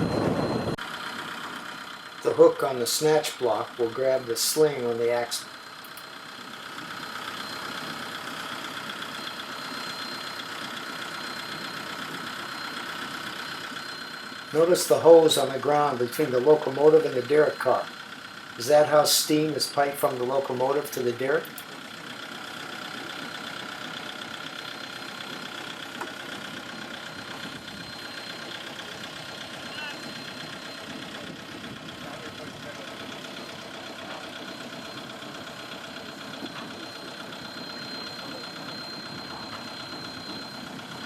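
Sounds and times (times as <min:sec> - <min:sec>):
heavy machinery idling: 0:00.0 - 0:41.0
steam hoisting engine running: 0:00.0 - 0:41.0
faint high whine: 0:36.4 - 0:41.0.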